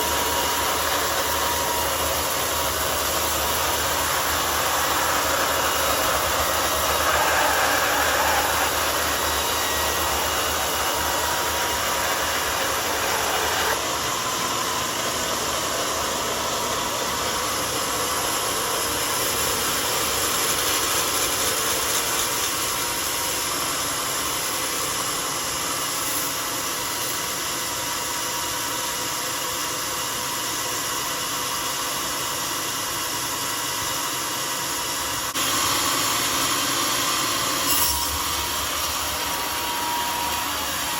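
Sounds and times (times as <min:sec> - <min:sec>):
sawmill sawing a log: 0:00.0 - 0:25.8, 0:35.4 - 0:40.9.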